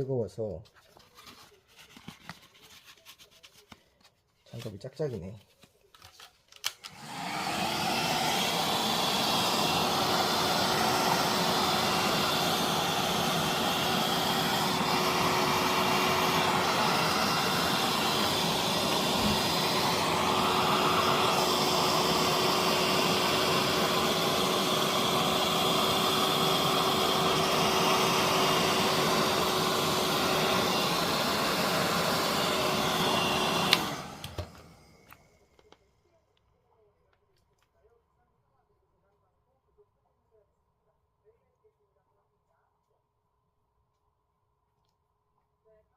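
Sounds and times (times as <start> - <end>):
hair dryer blowing: 6.6 - 35.4
hair dryer switch click: 33.7 - 34.6.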